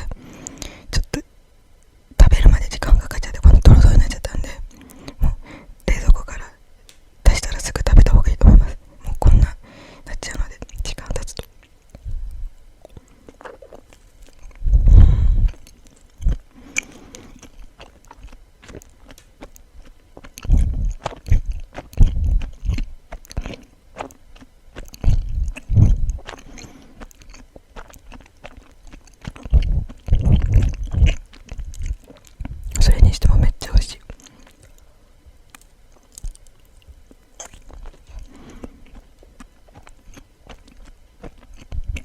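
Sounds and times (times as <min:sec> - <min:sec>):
close-miked sticky chewing: 0:07.3 - 0:42.0.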